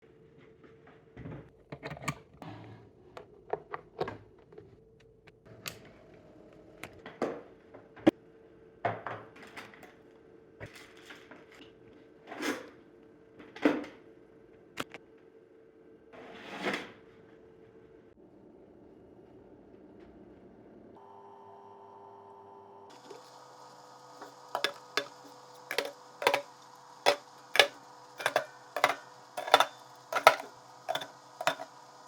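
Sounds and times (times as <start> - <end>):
faint steady hum: 20.7 - 32.0.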